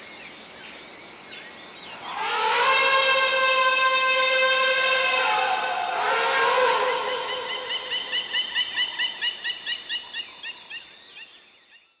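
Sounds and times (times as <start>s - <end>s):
elephant trumpeting: 2.0s - 8.2s.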